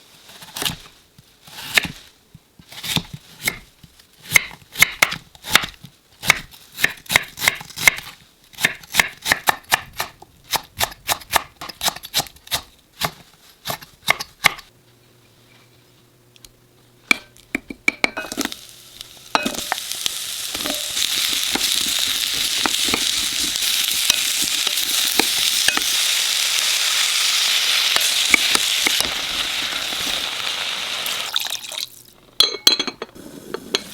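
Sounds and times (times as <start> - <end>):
knife chopping on cutting board: 4.3 - 14.6
food sizzling in hot pot: 18.1 - 32.2, 33.1 - 33.9.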